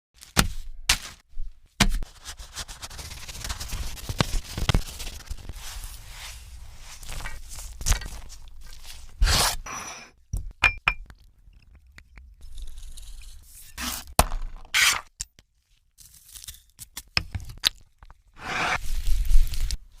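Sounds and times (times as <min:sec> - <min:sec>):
food scraping: 0:18.4 - 0:19.8.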